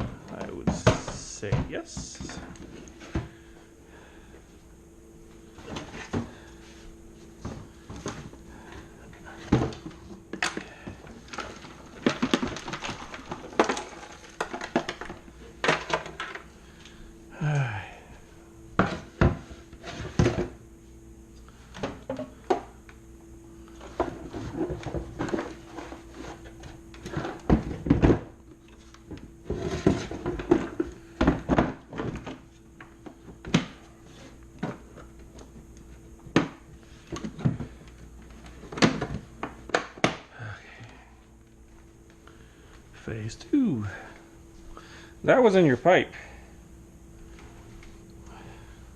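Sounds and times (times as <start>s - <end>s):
faint steady hum: 0.0s - 48.9s
hard objects clunking and scraping: 29.1s - 32.4s.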